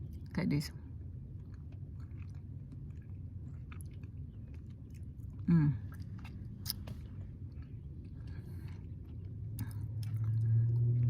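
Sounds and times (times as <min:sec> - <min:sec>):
person chewing: 0:00.9 - 0:11.0
wet mouth clicks: 0:05.9 - 0:07.0.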